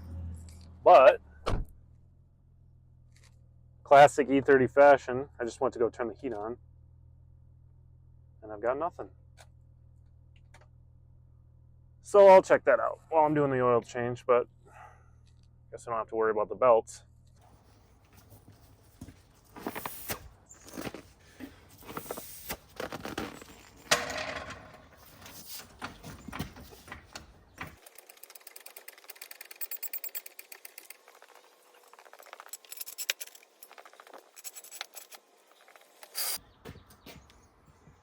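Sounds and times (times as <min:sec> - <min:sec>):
tools clinking and knocking: 0:22.8 - 0:28.1, 0:32.2 - 0:35.9.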